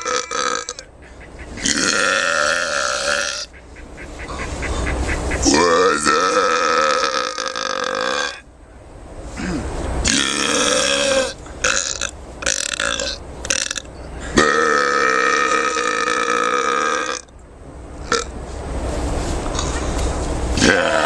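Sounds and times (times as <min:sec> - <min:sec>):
person burping: 0:00.0 - 0:00.9, 0:01.6 - 0:03.4, 0:05.5 - 0:08.4, 0:09.4 - 0:17.3, 0:20.6 - 0:21.0.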